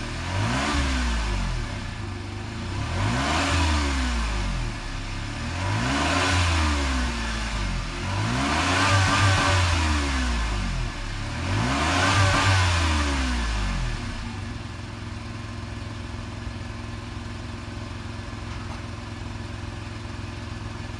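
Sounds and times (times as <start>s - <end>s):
car engine revving: 0.0s - 14.7s.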